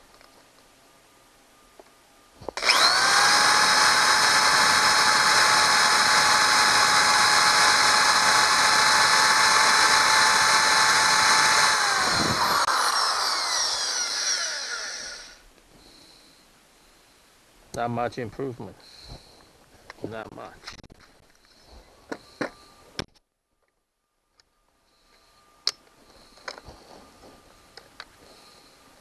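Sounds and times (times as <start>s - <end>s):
power drill whining: 2.4s - 15.4s.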